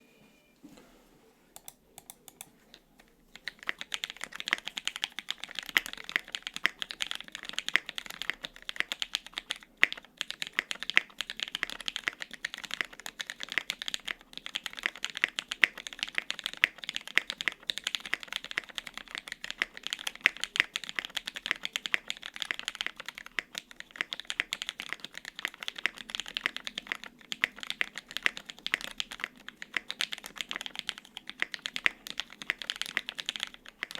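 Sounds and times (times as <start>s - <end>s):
typing on mechanical keyboard: 1.6s - 33.9s.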